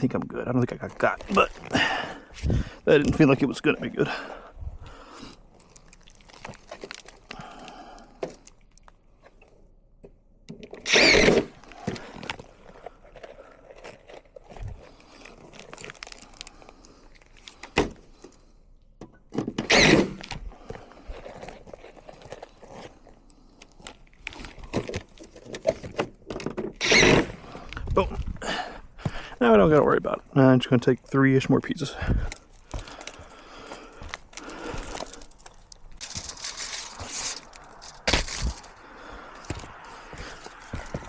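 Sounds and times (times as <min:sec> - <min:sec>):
scraping rustles: 0:32.3 - 0:38.8.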